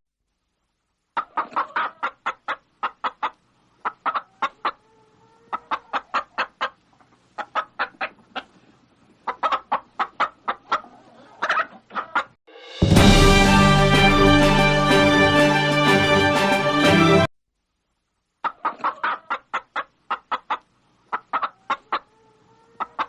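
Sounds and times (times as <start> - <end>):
hen clucking: 1.2 - 12.4, 18.4 - 23.0.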